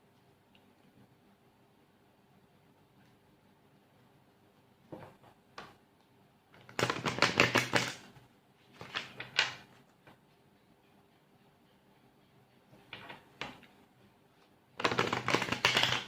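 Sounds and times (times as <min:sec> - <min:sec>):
cards being shuffled: 0:06.6 - 0:08.1, 0:08.8 - 0:09.6, 0:14.8 - 0:16.0.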